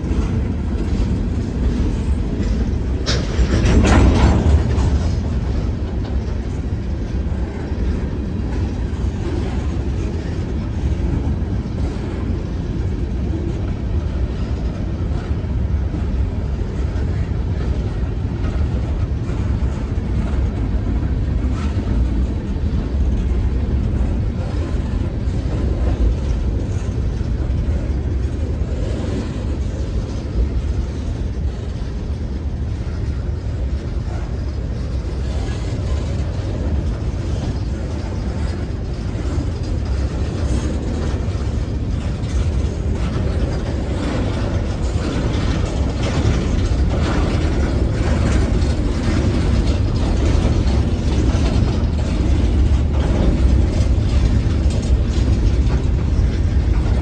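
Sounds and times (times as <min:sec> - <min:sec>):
train rolling on rails: 0:00.0 - 0:57.0.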